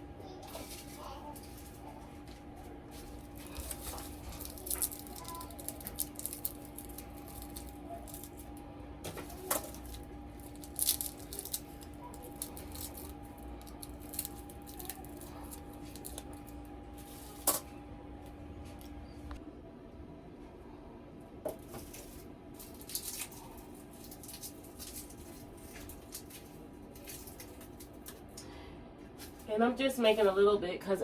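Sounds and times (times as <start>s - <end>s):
steady hum: 0.0s - 31.0s
utensils clicking and knocking: 3.2s - 8.4s.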